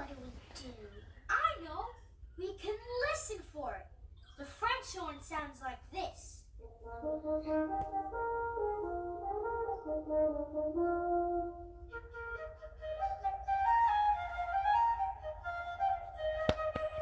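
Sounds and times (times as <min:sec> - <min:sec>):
flute melody: 0:06.6 - 0:17.0
french horn melody: 0:06.8 - 0:12.0.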